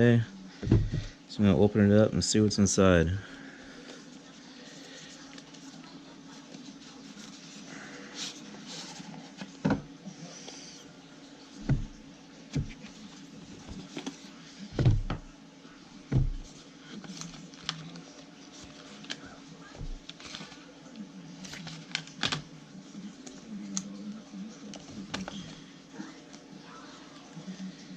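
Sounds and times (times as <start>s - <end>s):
knocks and thumps: 0.6s - 1.2s, 11.6s - 12.0s, 14.8s - 15.3s, 16.1s - 16.5s.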